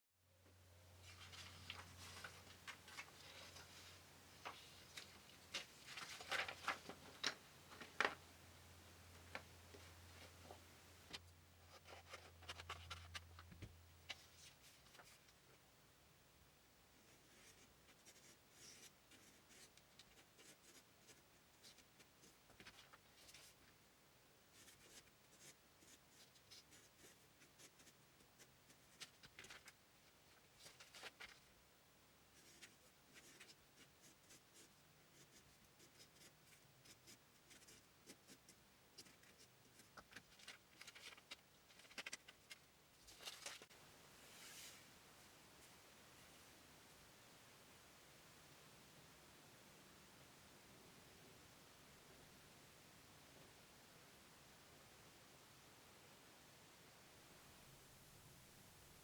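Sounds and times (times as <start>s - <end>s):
faint low hum: 0.2s - 59.0s
faint scratching strokes: 0.9s - 7.0s, 32.3s - 46.5s.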